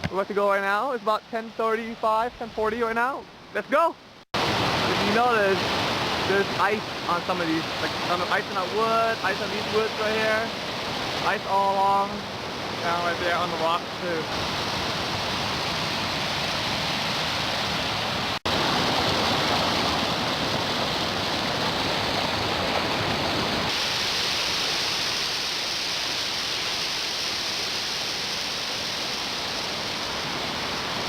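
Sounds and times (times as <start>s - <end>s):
waterfall and creek water rushing: 0.0s - 31.0s.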